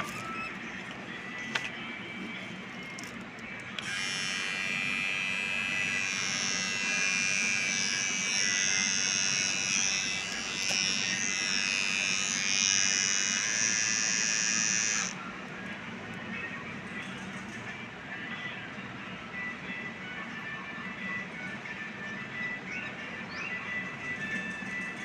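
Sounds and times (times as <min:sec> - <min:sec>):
electric hair trimmer buzzing: 0:03.7 - 0:15.2.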